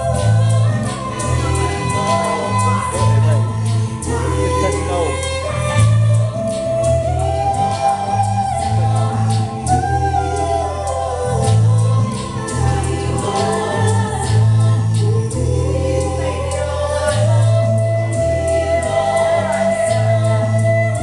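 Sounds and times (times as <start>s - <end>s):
band playing live: 0.0s - 15.5s
person singing: 0.0s - 21.0s.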